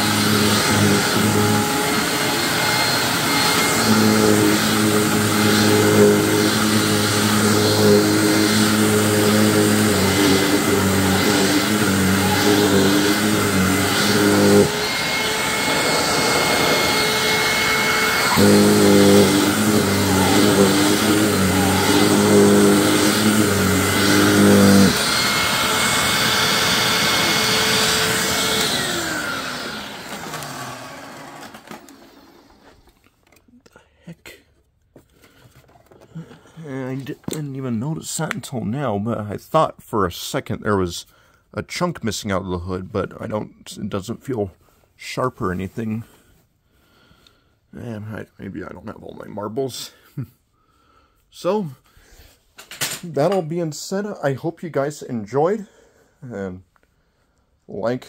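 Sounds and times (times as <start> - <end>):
vacuum cleaner running: 0.0 - 33.0.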